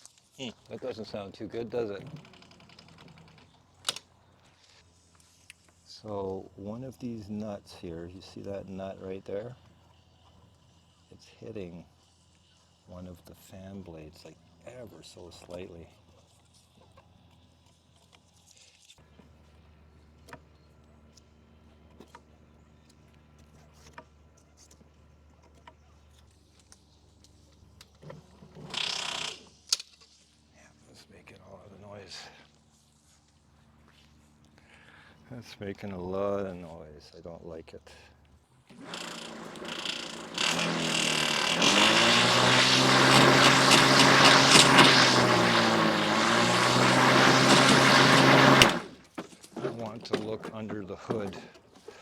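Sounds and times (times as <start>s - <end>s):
loud rattle of fan hitting nut: 28.5s - 29.8s, 38.7s - 49.6s
electric mower motor hum: 38.7s - 49.2s.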